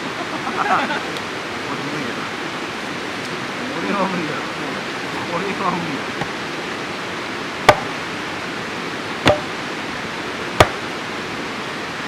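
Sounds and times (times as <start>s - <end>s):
steady rushing background noise: 0.0s - 12.0s
axe chopping firewood: 7.6s - 8.0s, 9.2s - 9.6s, 10.5s - 10.9s.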